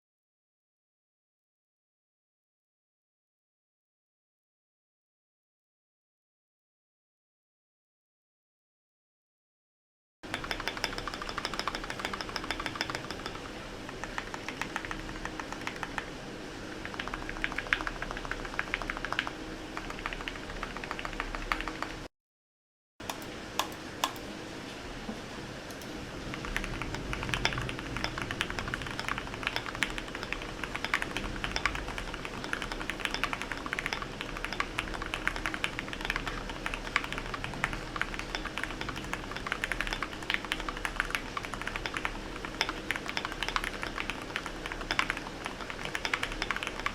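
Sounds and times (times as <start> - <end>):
mechanical keyboard typing: 10.3 - 22.1, 25.7 - 46.9.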